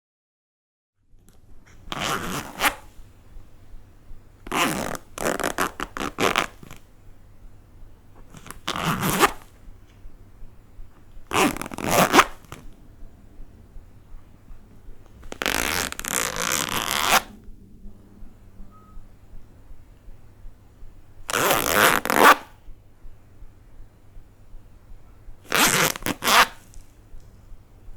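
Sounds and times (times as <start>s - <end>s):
zipper rasping: 1.9s - 2.9s, 4.5s - 6.8s, 8.3s - 9.5s, 11.3s - 12.6s, 15.2s - 17.4s, 21.3s - 22.6s, 25.5s - 26.8s.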